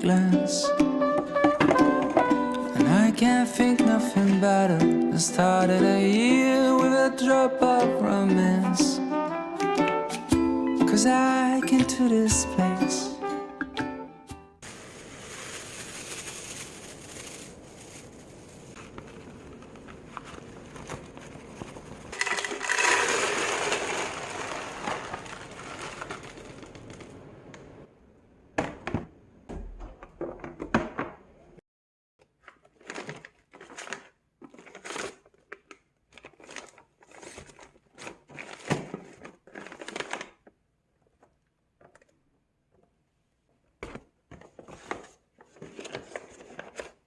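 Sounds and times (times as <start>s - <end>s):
objects rustling and clicking: 14.6s - 27.7s, 32.4s - 42.9s, 43.8s - 47.0s.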